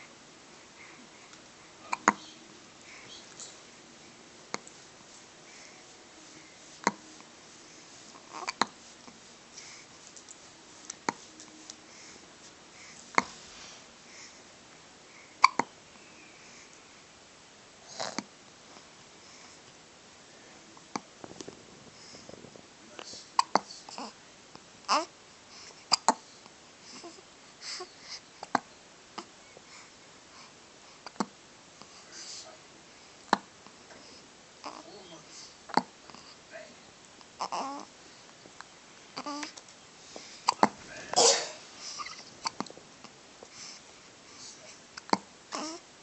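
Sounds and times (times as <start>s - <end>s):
person hiccuping: 15.4s - 15.7s, 40.5s - 42.6s
breathy sounds: 21.2s - 24.1s.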